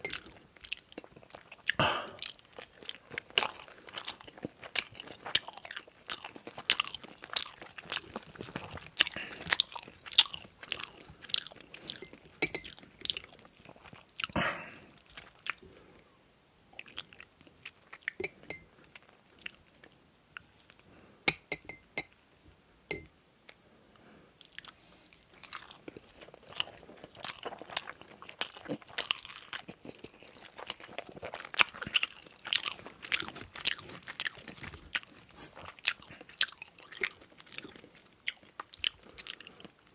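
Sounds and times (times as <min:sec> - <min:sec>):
person chewing food: 0:00.0 - 0:16.2, 0:16.8 - 0:22.2, 0:22.9 - 0:39.9.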